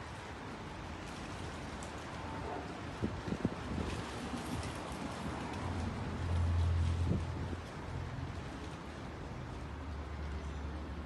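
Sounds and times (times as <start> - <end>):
vehicle passing engine rumble: 3.8 - 11.0.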